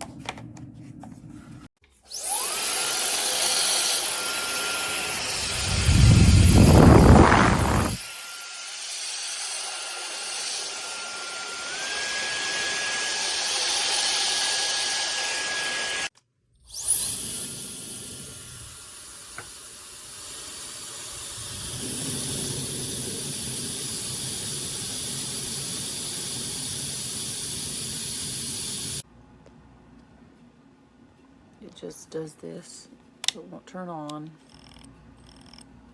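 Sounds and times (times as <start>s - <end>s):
hair dryer whine and air rush: 2.1s - 16.1s.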